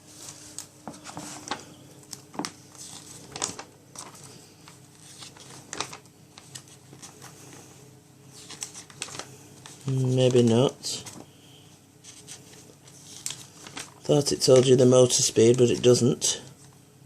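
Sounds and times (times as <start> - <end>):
paper pages rustling: 0.1 - 7.7, 8.3 - 11.4, 12.0 - 16.8
light clicks and crinkles: 0.2 - 7.6, 8.3 - 10.4, 12.0 - 14.7.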